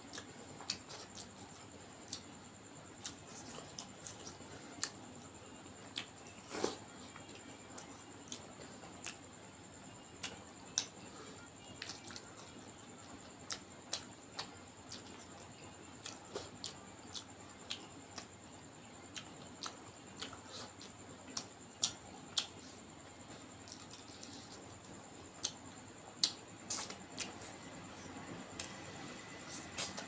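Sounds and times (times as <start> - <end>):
person chewing food: 0.1 - 2.3, 3.0 - 5.0, 5.9 - 9.2, 11.8 - 12.5, 13.5 - 18.3, 19.1 - 25.6, 26.2 - 30.0.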